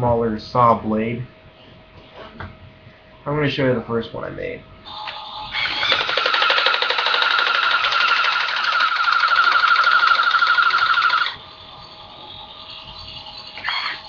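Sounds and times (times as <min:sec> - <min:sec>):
toy chainsaw electronic buzz: 0:05.0 - 0:11.4, 0:13.0 - 0:14.0.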